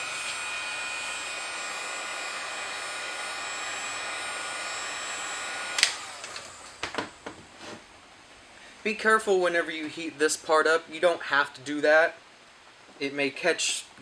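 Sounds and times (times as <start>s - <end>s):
hot-air blower running: 0.0s - 7.3s.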